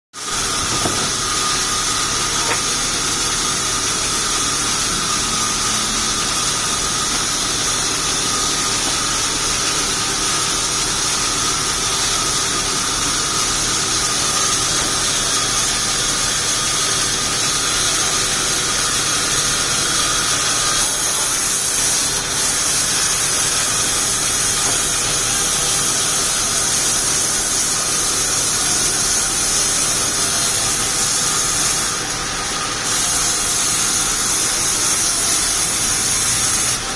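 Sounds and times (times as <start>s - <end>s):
high-pitched saw whine: 0.2s - 36.9s
sawmill saw running: 0.2s - 36.9s.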